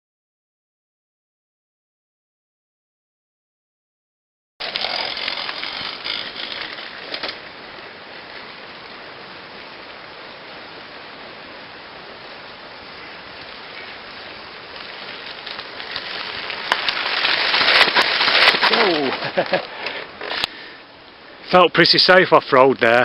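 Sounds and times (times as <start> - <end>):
bicycle clicks and rattles: 4.6 - 7.5, 14.7 - 20.5
tyre and wind noise: 4.6 - 21.2.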